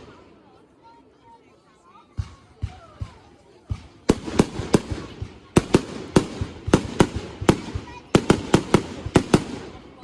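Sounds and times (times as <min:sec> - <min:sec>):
fireworks bangs: 0:04.1 - 0:10.0.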